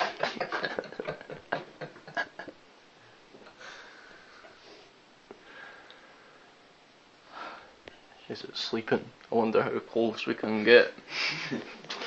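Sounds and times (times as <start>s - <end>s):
soft puffs of air: 3.0s - 8.3s.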